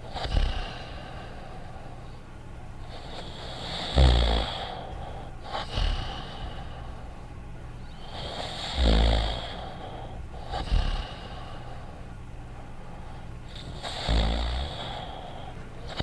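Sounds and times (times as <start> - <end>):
cartoon dog snoring: 0.0 - 1.0, 2.9 - 4.8, 5.5 - 6.6, 8.0 - 9.8, 10.4 - 11.4, 13.5 - 15.3.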